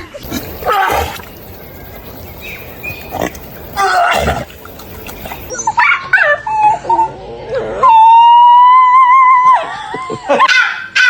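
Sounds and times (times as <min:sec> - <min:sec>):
dog howling: 0:00.2 - 0:05.5.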